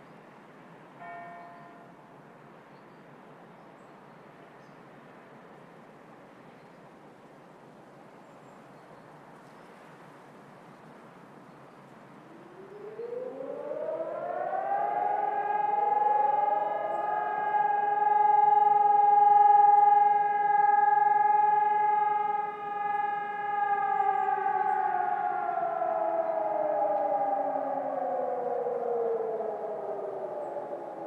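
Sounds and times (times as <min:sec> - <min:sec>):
electronic civil defence sirens: 0:00.4 - 0:02.6, 0:08.8 - 0:31.0.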